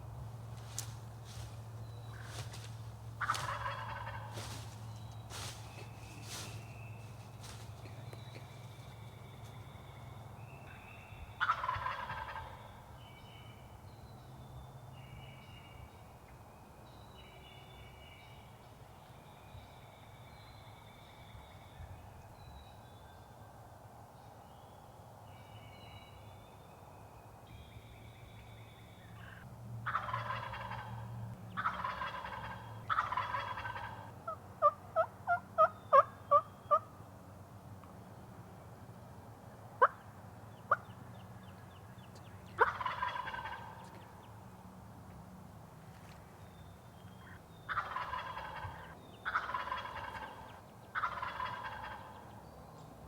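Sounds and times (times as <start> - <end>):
songbirds singing: 0.0 - 53.0
turkey gobbling: 0.6 - 6.6, 11.4 - 12.6, 29.2 - 36.9, 39.8 - 40.0, 42.6 - 43.9, 47.7 - 52.2.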